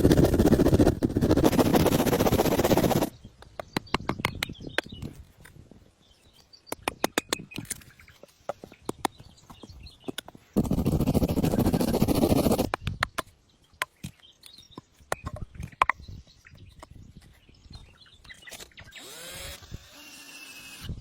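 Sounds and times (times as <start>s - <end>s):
loud rough scraping noise: 0.0s - 3.1s, 10.6s - 12.7s
birds chirping: 6.0s - 11.9s.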